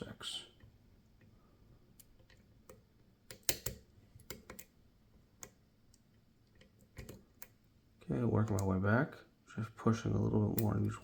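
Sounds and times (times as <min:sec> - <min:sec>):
lock pick clicking in lock: 0:02.0 - 0:04.7.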